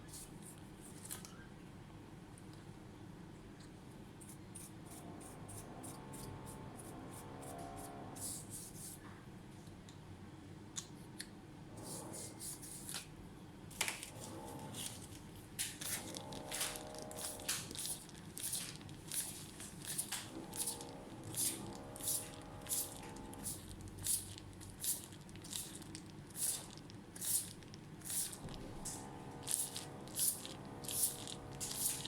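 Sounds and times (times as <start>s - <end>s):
hissy rubbing strokes: 28.1s - 32.0s.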